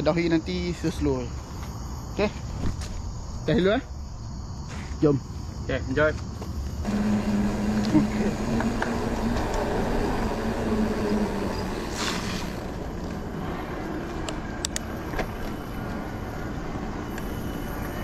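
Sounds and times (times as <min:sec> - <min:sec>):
tyre noise: 0:06.8 - 0:16.9
electric motor hum: 0:06.8 - 0:18.0.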